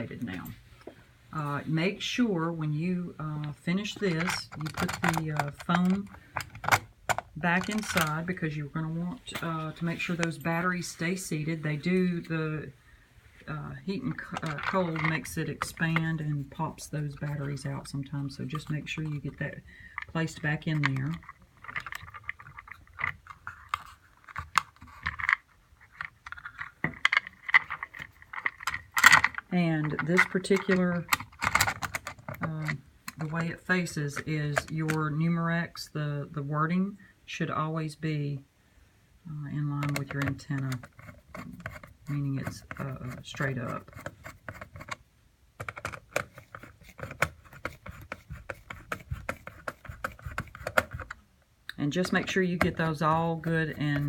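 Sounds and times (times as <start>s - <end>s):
plastic device clicks and knocks: 26.2s - 32.5s, 45.6s - 51.2s.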